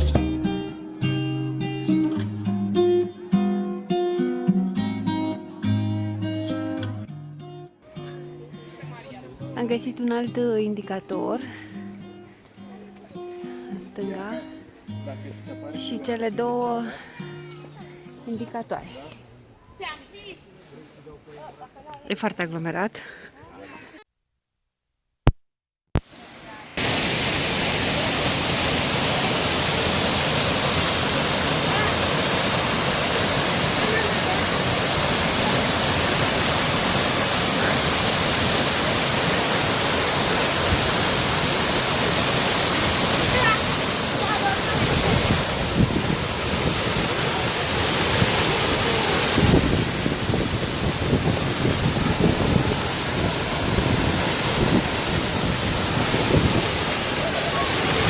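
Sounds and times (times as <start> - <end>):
waterfall rushing: 0.0 - 0.9, 26.1 - 58.0.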